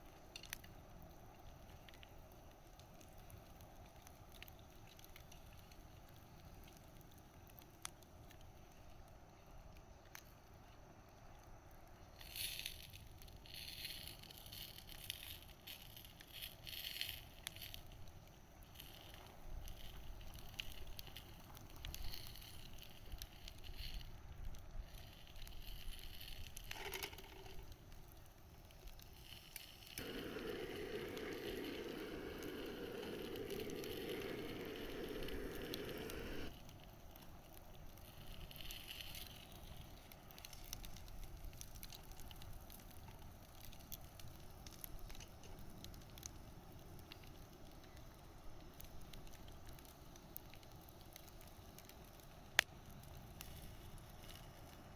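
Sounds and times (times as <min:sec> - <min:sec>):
wood bonfire crackling: 0:00.0 - 0:54.9
steady rushing noise: 0:30.0 - 0:36.5.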